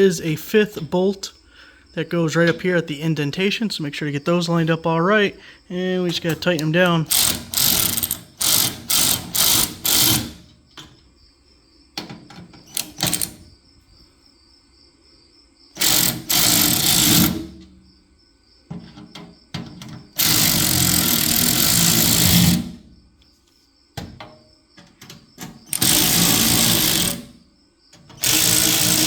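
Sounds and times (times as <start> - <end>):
handling clicks and knocks: 6.0 - 7.2
power drill-driver running: 7.1 - 10.4, 15.8 - 17.4, 20.2 - 22.7, 25.7 - 27.2, 28.2 - 29.0.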